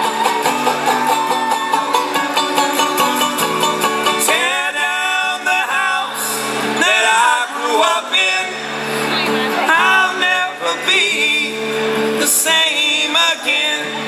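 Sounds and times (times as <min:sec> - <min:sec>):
acoustic band with plucked guitar: 0:00.0 - 0:14.0
person singing: 0:04.2 - 0:14.0.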